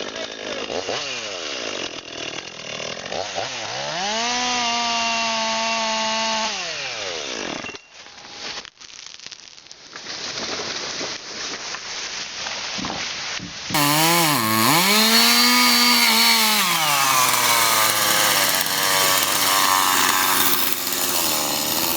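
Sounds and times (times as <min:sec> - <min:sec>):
chainsaw revving: 0:13.8 - 0:21.9
rough noisy rasp: 0:13.8 - 0:21.9.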